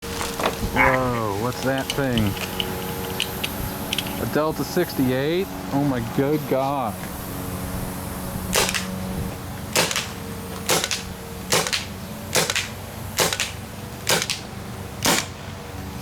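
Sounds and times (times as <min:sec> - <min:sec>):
paintball marker shots: 0:08.5 - 0:08.9, 0:09.8 - 0:15.4.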